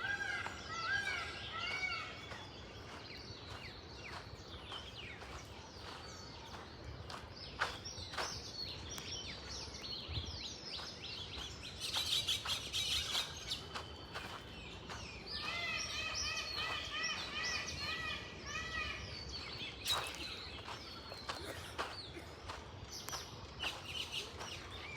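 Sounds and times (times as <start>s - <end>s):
birds chirping and calling: 0.0s - 24.9s.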